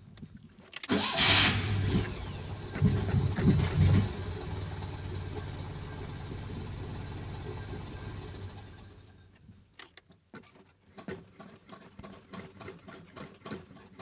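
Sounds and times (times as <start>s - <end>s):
car engine revving and idling: 1.0s - 9.2s.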